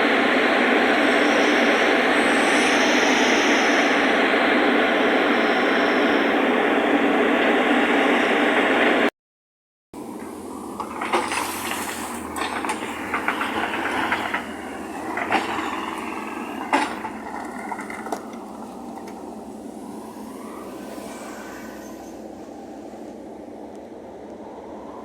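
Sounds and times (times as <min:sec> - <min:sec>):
heavy machinery running: 0:10.0 - 0:22.8
metal clanks and knocks: 0:10.8 - 0:19.2.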